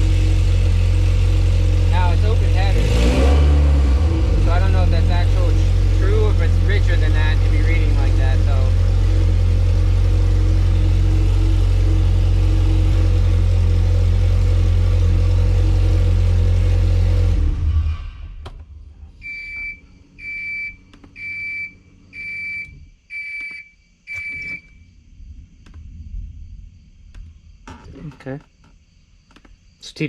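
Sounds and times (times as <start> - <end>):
car engine idling: 0.0 - 23.0.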